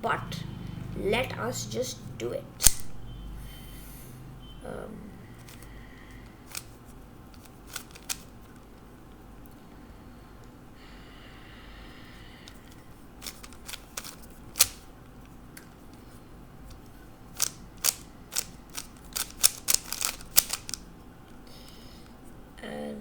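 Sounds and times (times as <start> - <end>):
puzzle cube plastic clicks: 2.6 - 2.9, 5.4 - 8.8, 12.5 - 14.9, 16.7 - 20.8.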